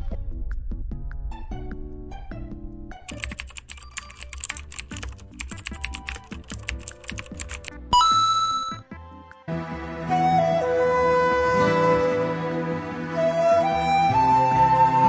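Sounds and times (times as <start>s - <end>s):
keyboard typing clicks: 3.1s - 8.8s.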